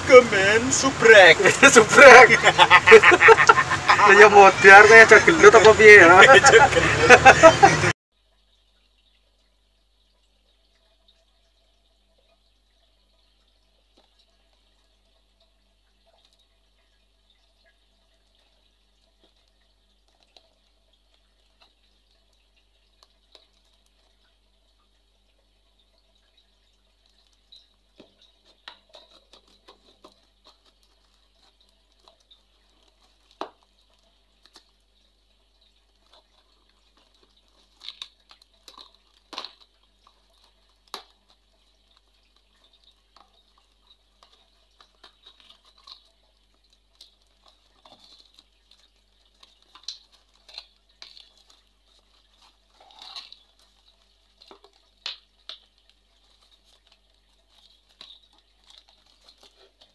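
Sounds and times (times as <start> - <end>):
rustling: 26.8 - 59.9.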